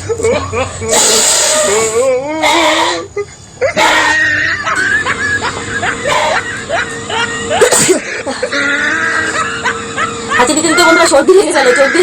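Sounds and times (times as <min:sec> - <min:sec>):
person sneezing: 0:07.6 - 0:08.0.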